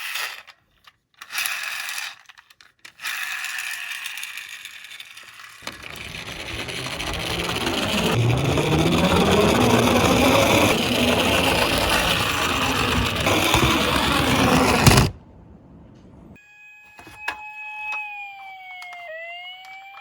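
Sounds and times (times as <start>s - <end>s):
toy cars clattering on track: 0.0s - 15.1s
electronic toy siren: 16.4s - 20.0s.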